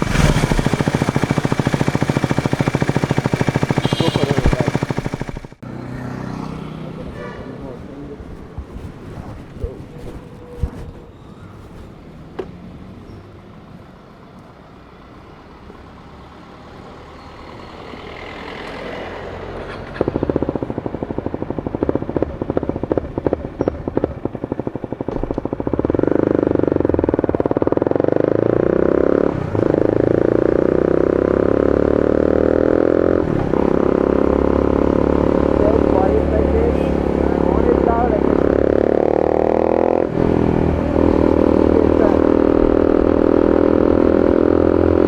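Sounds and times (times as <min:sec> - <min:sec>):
motorcycle engine revving: 0:00.0 - 0:06.8, 0:18.1 - 0:45.0.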